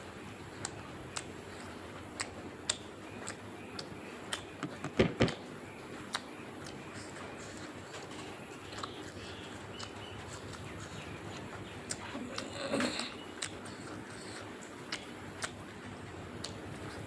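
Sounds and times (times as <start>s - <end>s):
person chewing: 0.5s - 4.8s, 6.1s - 15.6s
louder knocks: 4.8s - 5.4s
wet mouth clicks: 11.9s - 15.6s.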